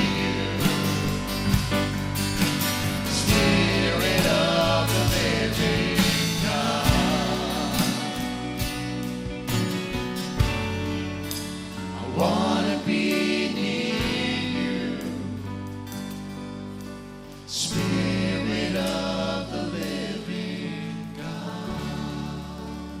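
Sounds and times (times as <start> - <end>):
voices singing held chords: 0.0 - 1.6, 3.0 - 9.1, 11.8 - 15.8, 17.5 - 23.0
instrumental accompaniment: 0.0 - 20.5.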